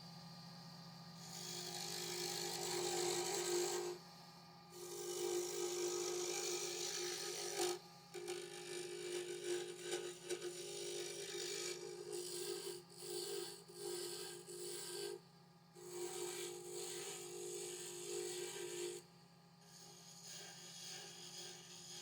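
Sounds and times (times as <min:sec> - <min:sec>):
wood lathe humming: 0:01.3 - 0:04.0, 0:04.8 - 0:15.2, 0:15.8 - 0:19.0.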